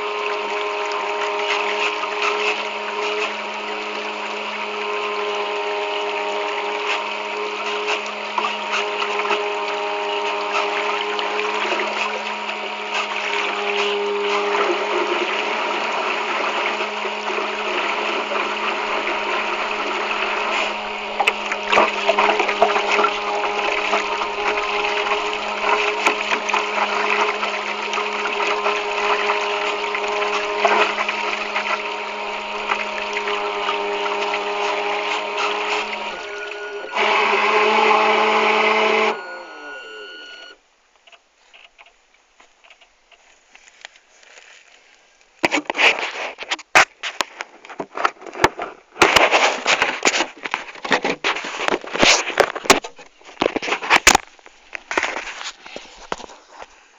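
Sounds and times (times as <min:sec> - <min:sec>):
knocks and splashes: 0:00.0 - 0:37.8, 0:45.4 - 0:56.8
electric motors humming: 0:00.0 - 0:40.6
water rushing past hull: 0:00.0 - 0:40.6.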